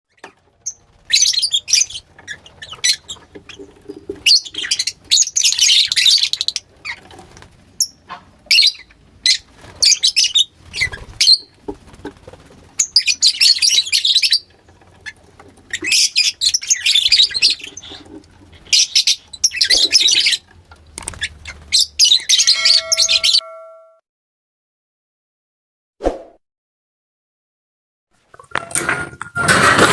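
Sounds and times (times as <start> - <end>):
lovebirds chirping: 0.1 - 11.6, 12.7 - 23.6.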